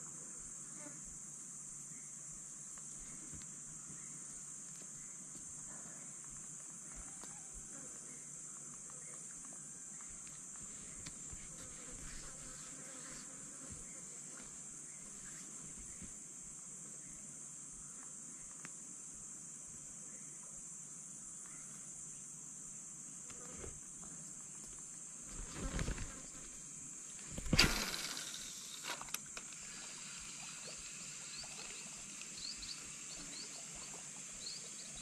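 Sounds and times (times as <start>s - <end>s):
high-pitched insect chorus: 0.0s - 35.0s
small clicks and rustles: 27.1s - 29.9s.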